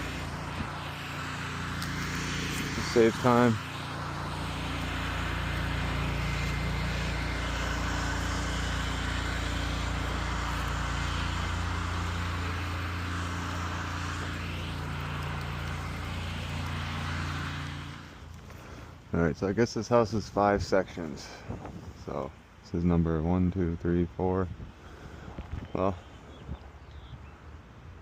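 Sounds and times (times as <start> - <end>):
pressure washer engine running: 0.0 - 18.9.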